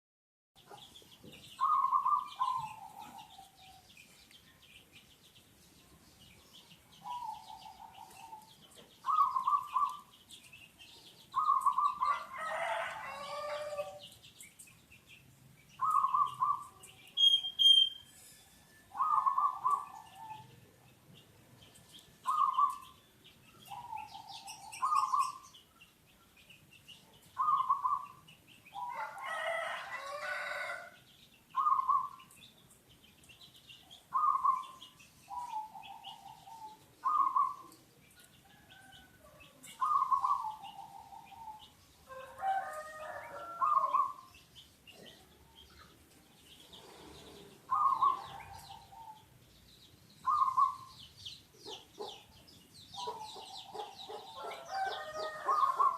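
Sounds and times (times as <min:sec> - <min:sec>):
small birds chirping: 0:00.6 - 0:55.9
dove cooing: 0:01.6 - 0:03.8, 0:07.0 - 0:10.0, 0:11.4 - 0:14.0, 0:15.8 - 0:17.3, 0:18.9 - 0:20.6, 0:22.2 - 0:23.0, 0:23.7 - 0:25.4, 0:27.4 - 0:28.1, 0:31.6 - 0:32.2, 0:34.1 - 0:37.8, 0:39.8 - 0:44.2, 0:46.9 - 0:49.2, 0:50.3 - 0:50.9, 0:53.0 - 0:55.9
rooster crowing: 0:12.0 - 0:14.0, 0:28.8 - 0:31.0, 0:42.1 - 0:44.2, 0:54.2 - 0:55.9.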